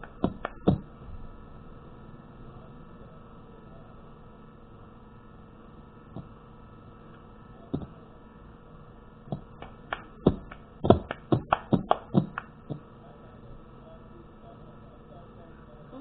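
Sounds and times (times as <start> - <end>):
sharp taps: 0.0 - 0.9, 9.3 - 12.8.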